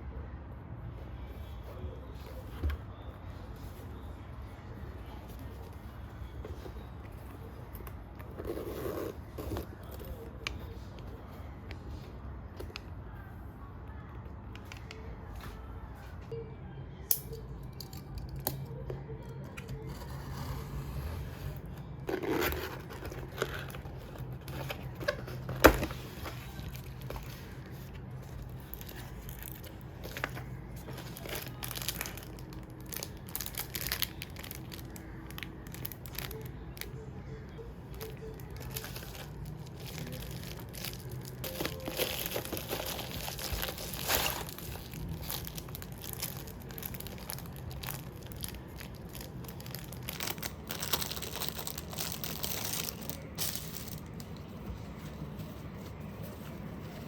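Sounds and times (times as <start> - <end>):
wrapping crinkling and tearing: 22.0 - 36.9, 38.0 - 57.0.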